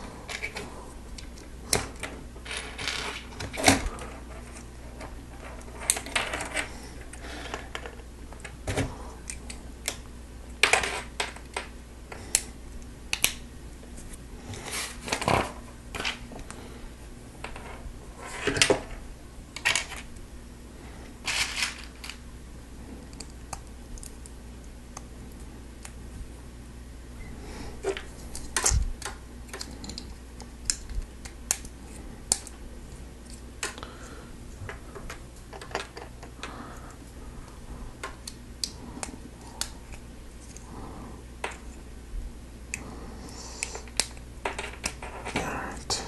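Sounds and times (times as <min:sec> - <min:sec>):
steady low hum: 0:00.0 - 0:46.0
plastic parts rattling: 0:21.2 - 0:22.2.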